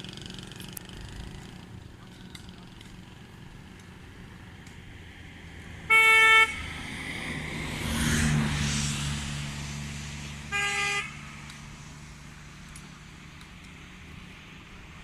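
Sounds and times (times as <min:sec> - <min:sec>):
motor vehicle passing by: 0:00.0 - 0:15.0
vehicle horn honking: 0:05.9 - 0:06.7, 0:10.5 - 0:11.3.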